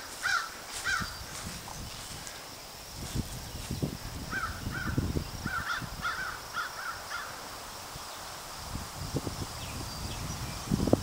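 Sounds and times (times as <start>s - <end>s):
bird calling: 0.0s - 1.4s.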